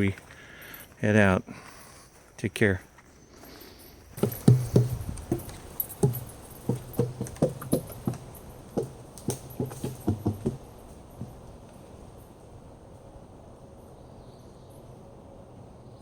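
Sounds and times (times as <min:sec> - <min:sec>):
footsteps on forest trail: 0:00.0 - 0:12.0.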